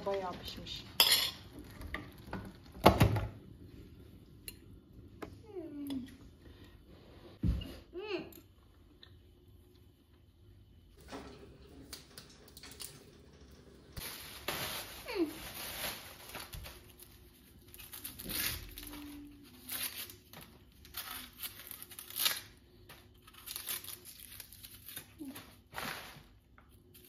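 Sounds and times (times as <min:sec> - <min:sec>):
packaging crinkling and rustling: 0:14.0 - 0:27.0.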